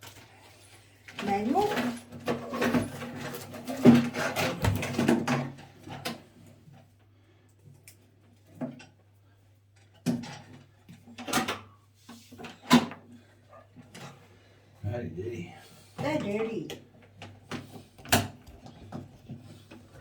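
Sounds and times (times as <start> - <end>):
objects knocking and clunking: 1.2 - 6.3, 9.8 - 13.2.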